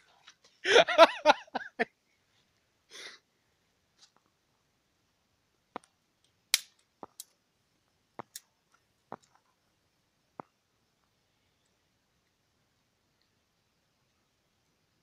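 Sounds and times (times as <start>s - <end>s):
dry wood snapping: 6.5s - 7.3s.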